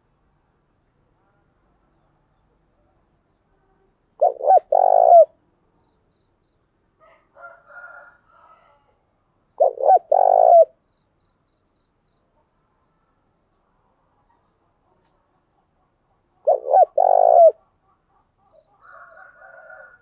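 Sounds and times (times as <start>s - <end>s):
dove cooing: 4.2s - 5.4s, 9.6s - 10.8s, 16.4s - 17.6s.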